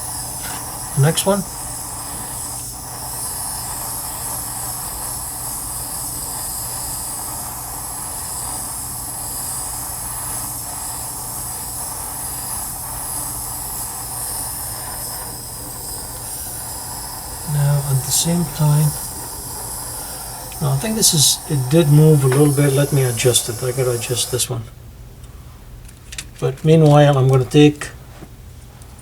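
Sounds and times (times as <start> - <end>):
soldering torch hissing: 0.0 - 24.8.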